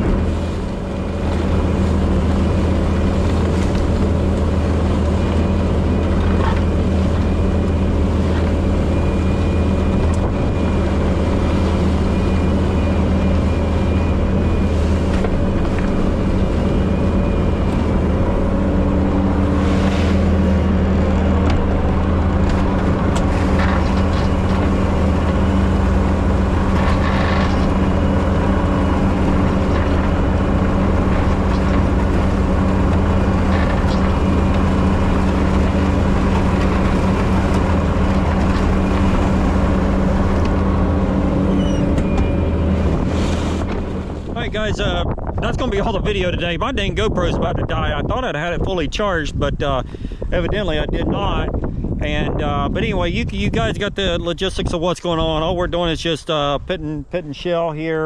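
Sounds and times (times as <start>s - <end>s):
diesel engine running: 0.0s - 58.0s
scraping and clanking noises: 22.4s - 24.8s, 26.6s - 27.9s.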